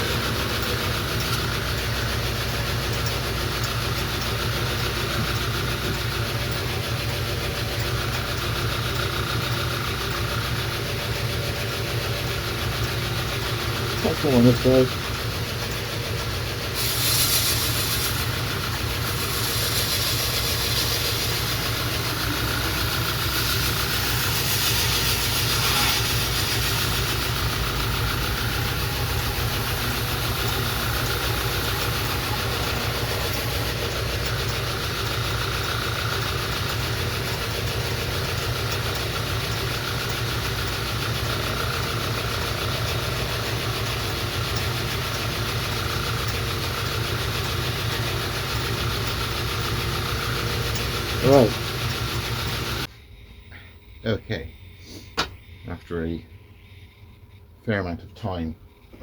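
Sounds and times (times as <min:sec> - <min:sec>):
belt grinder motor hum: 0:00.0 - 0:52.9
blade hissing on belt: 0:16.7 - 0:36.5.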